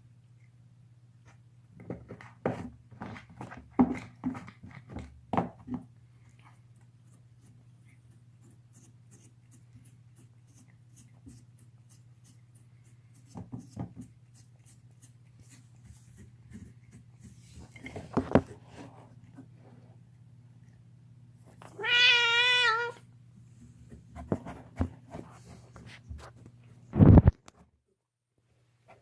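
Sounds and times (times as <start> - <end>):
cat gnawing on a bone: 5.8 - 21.6
cat yowling: 21.7 - 23.0.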